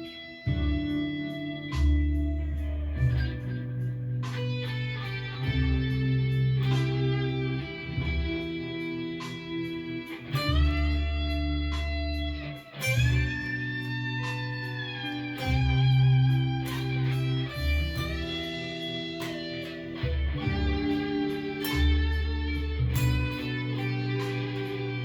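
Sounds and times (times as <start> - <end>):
backing track with bass: 0.0 - 25.0
electric guitar blues lead: 0.0 - 25.0.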